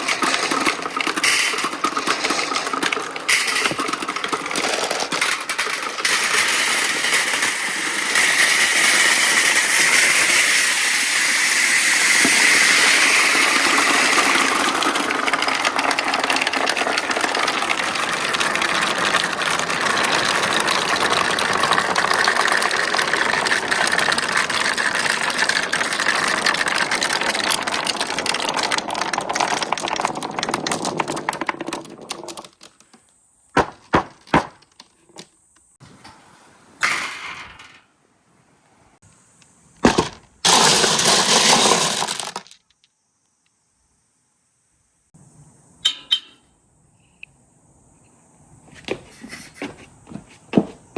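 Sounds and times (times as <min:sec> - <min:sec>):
marbles rolling and clattering: 0:00.0 - 0:35.4, 0:36.8 - 0:37.8, 0:39.8 - 0:42.9.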